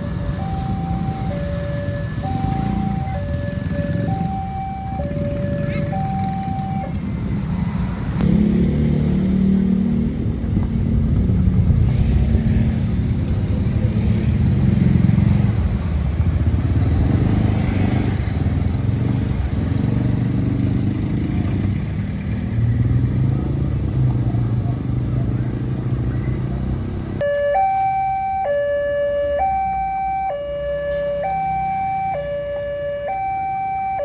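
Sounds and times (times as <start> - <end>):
railway crossing two-tone alarm: 0.0 - 7.8, 27.2 - 34.0
motorcycle engines passing: 0.0 - 34.0.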